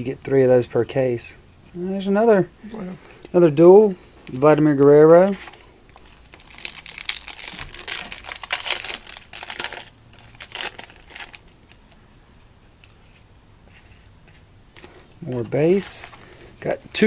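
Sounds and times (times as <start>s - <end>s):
foil wrapper crinkling and tearing: 5.3s - 12.0s, 15.6s - 17.0s.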